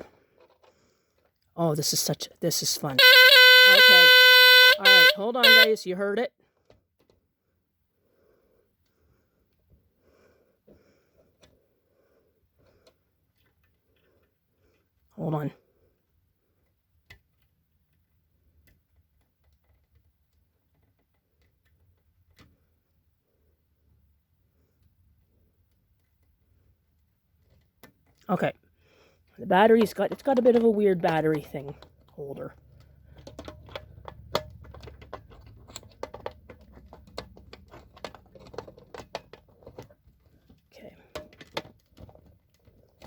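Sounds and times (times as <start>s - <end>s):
plastic clicking and scraping: 0.0s - 1.4s, 18.5s - 22.6s, 29.6s - 43.0s.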